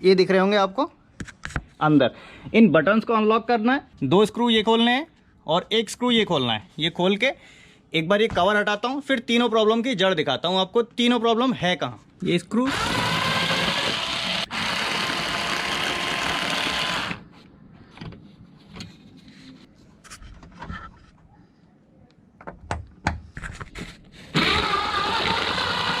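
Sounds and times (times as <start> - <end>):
electric screwdriver whirring: 12.7 - 17.2, 24.4 - 26.0.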